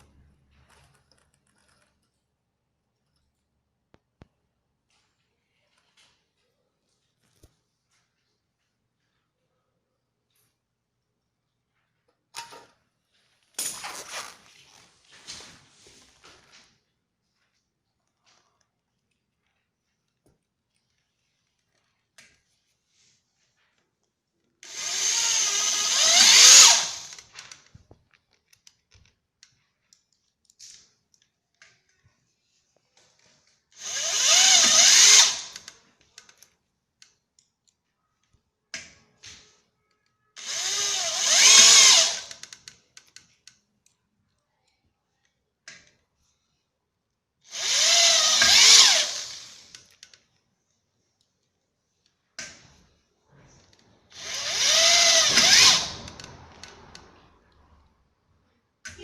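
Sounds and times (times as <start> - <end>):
power drill driving screws: 24.6 - 27.6, 33.8 - 35.8, 40.4 - 42.6, 47.5 - 50.0, 54.1 - 56.8.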